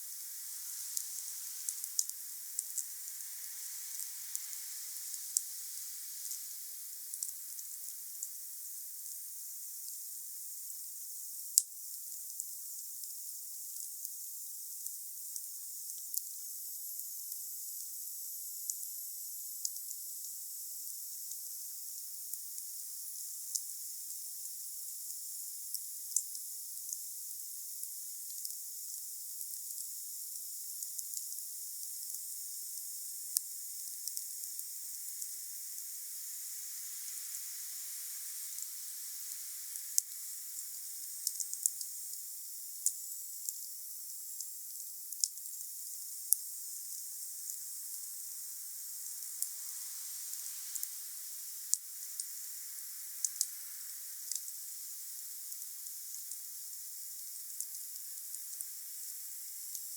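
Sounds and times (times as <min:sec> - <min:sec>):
wood fire hissing and crackling: 0:00.0 - 0:10.6, 0:27.8 - 0:59.9.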